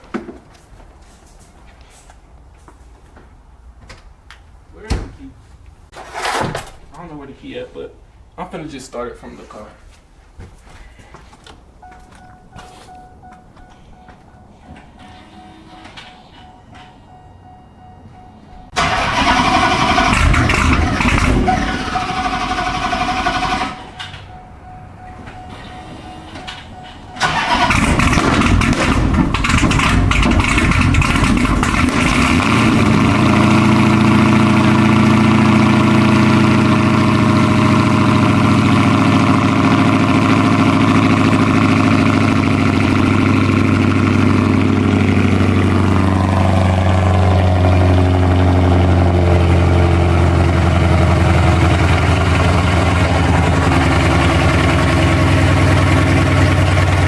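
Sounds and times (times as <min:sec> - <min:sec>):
car engine starting and idling: 0:11.6 - 0:57.0.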